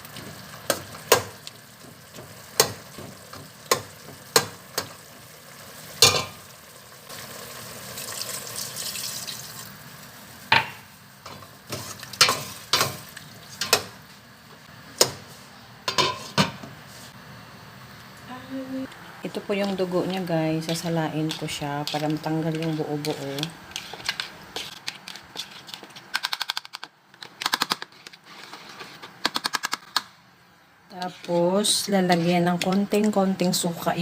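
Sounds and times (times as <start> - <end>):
food sizzling in a pan: 0.0 - 14.1.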